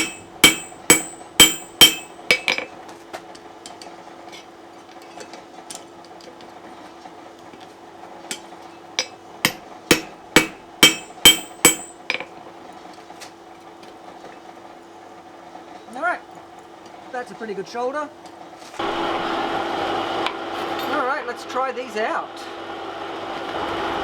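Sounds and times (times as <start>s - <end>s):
steady hum: 0.0s - 2.7s, 8.3s - 12.2s
hammer striking steel on anvil: 0.0s - 2.8s, 8.3s - 12.3s.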